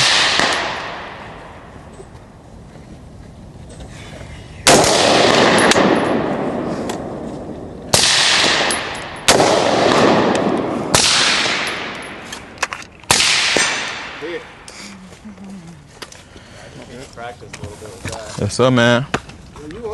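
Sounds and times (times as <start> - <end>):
rifle shots with echo: 0.0 - 1.7, 4.6 - 14.6.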